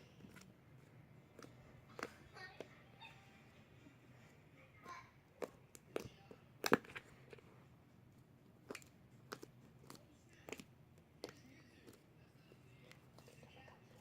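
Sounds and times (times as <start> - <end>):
slime clicking and popping: 8.6 - 12.0.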